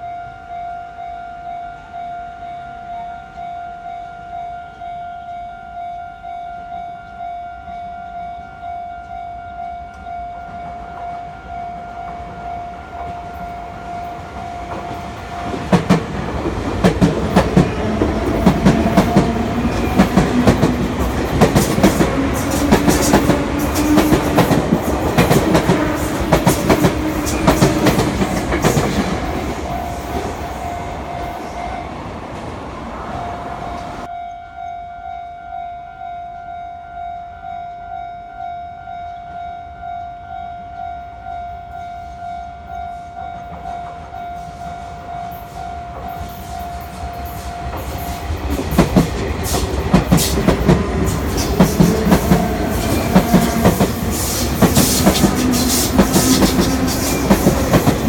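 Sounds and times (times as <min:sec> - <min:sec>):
level crossing alarm ringing: 0:00.0 - 0:32.1, 0:33.2 - 0:58.0
train passing over crossing: 0:00.0 - 0:58.0
wheels clicking over rail joints: 0:46.0 - 0:58.0.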